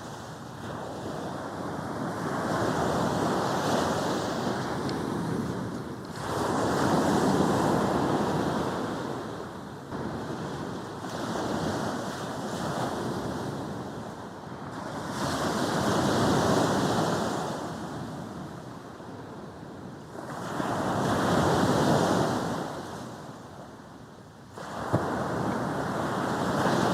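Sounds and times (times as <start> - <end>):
sea waves breaking on beach: 0.0 - 18.5, 24.5 - 26.9.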